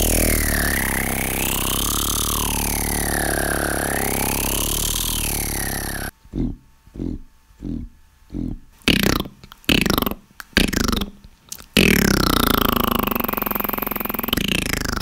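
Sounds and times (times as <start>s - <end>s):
long throaty sliding sound: 0.0s - 6.1s
beatboxing vocal effects: 0.0s - 15.0s.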